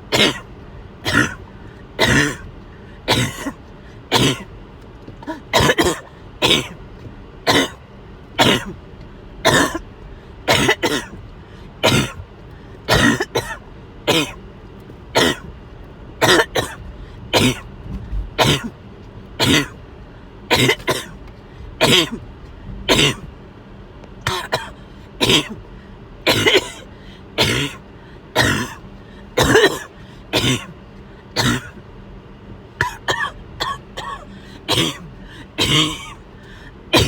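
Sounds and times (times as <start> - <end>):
person coughing: 0.1 - 4.5, 5.2 - 6.8, 7.4 - 7.8, 8.4 - 8.8, 9.4 - 9.9, 10.5 - 11.2, 11.8 - 12.2, 12.9 - 14.4, 15.2 - 15.5, 16.2 - 17.7, 18.4 - 18.7, 19.4 - 19.8, 20.5 - 21.2, 21.8 - 22.2, 22.9 - 23.3, 24.2 - 25.6, 26.2 - 27.8, 28.4 - 28.8, 29.4 - 30.8, 31.4 - 31.8, 32.8 - 36.2.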